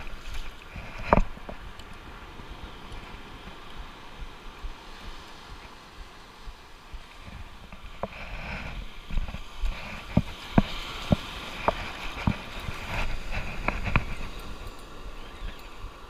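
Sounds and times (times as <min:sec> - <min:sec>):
steady low rumble: 0:01.3 - 0:08.0.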